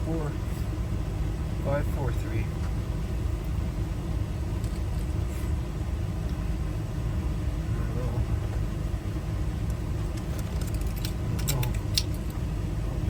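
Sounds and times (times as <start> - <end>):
low engine-like rumble: 0.0 - 13.0
small sharp metal clicks: 9.7 - 12.4.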